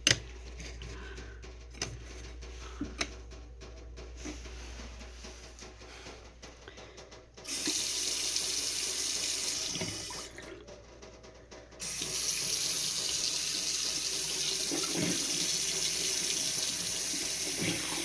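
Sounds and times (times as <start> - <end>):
faucet water running into sink: 7.4 - 10.6, 11.8 - 18.0.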